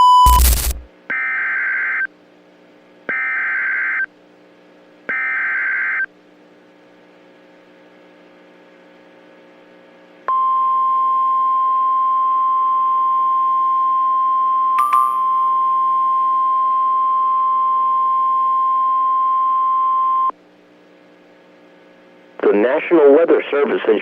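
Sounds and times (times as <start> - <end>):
steady alert tone: 0.0 - 0.9
warbling data tones: 0.0 - 0.9.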